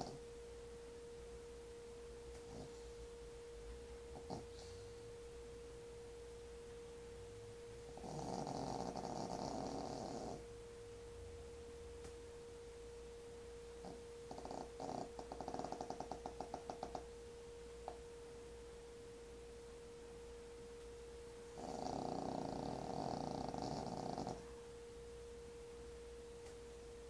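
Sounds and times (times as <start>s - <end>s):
pet snoring: 0.0s - 0.2s, 2.4s - 3.0s, 4.1s - 5.1s, 7.9s - 10.5s, 13.8s - 17.1s, 21.6s - 24.5s
steady high hum: 0.0s - 27.0s.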